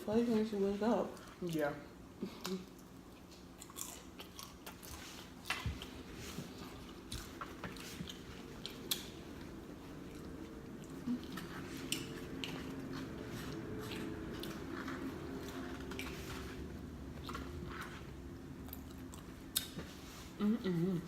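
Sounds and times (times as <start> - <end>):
chewing and biting: 2.7 - 9.4, 10.0 - 18.0.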